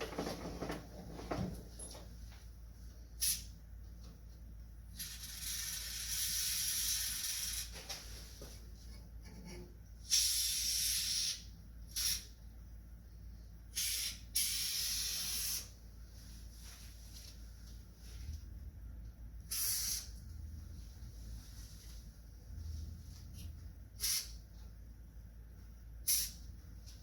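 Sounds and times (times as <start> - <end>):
aerosol can spraying: 13.8 - 15.7, 19.5 - 20.1.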